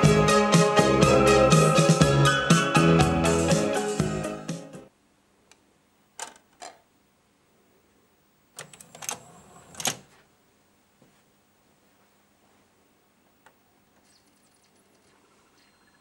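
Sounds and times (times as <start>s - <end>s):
music: 0.0s - 4.9s.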